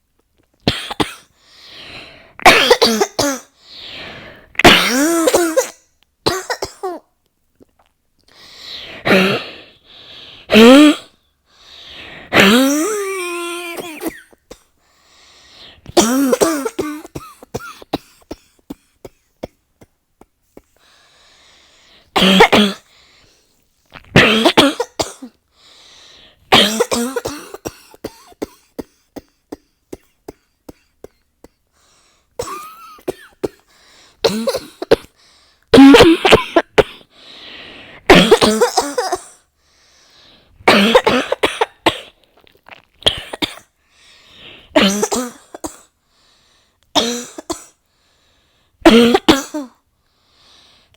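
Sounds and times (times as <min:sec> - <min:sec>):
person coughing: 0:00.7 - 0:01.3, 0:02.4 - 0:03.5, 0:04.6 - 0:07.1, 0:09.1 - 0:09.6, 0:10.5 - 0:11.1, 0:12.3 - 0:14.4, 0:15.9 - 0:20.8, 0:22.2 - 0:22.9, 0:24.1 - 0:25.4, 0:26.5 - 0:31.6, 0:32.4 - 0:35.2, 0:35.8 - 0:37.1, 0:38.1 - 0:39.4, 0:40.7 - 0:42.2, 0:43.0 - 0:43.7, 0:44.8 - 0:45.9, 0:47.0 - 0:47.8, 0:48.9 - 0:49.8.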